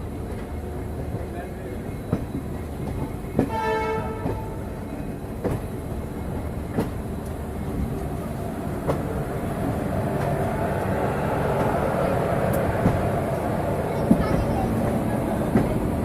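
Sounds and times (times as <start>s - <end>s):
train rumbling on track: 0.0s - 16.0s
short train horn: 3.5s - 4.6s.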